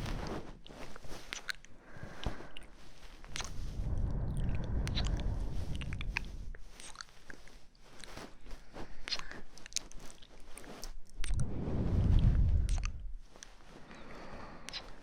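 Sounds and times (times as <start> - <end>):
crackles and clicks: 0.0 - 15.0
low rumble: 3.2 - 6.8, 11.2 - 13.4.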